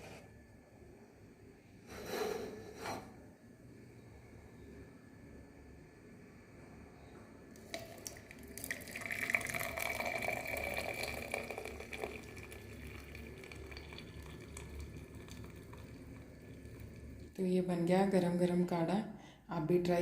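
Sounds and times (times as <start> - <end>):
liquid pouring into a cup: 7.6 - 17.3.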